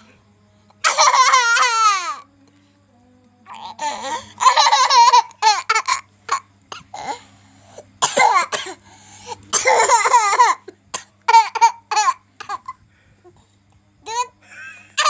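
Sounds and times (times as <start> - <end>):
child coughing: 8.0 - 8.8, 9.5 - 12.7.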